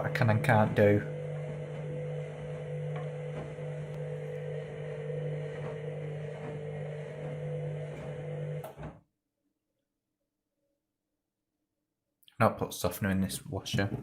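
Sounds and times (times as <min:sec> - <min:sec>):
washing machine motor hum: 0:00.0 - 0:09.0.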